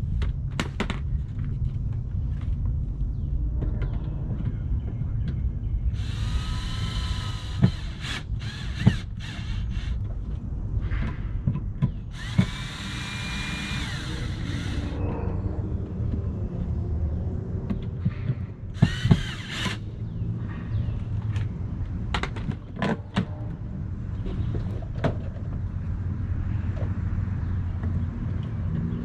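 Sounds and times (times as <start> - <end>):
power drill motor whine: 6.0 - 10.0, 12.1 - 15.0, 18.8 - 19.8.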